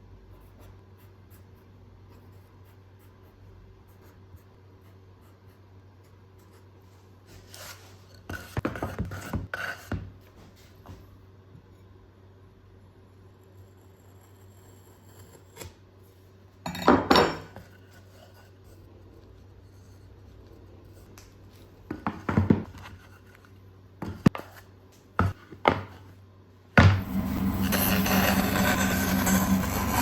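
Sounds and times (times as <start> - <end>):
loud noisy running machine: 26.9 - 30.0.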